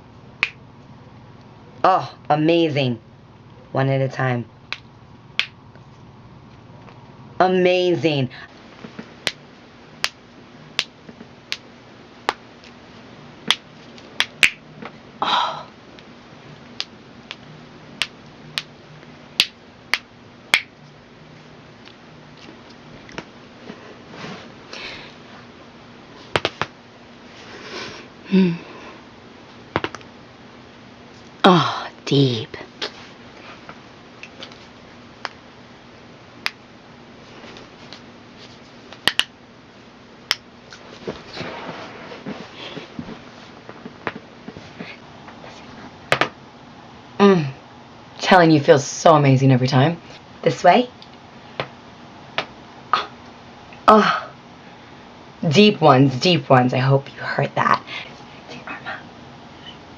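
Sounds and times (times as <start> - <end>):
soft rustling: 23.6 - 24.6, 40.7 - 45.9.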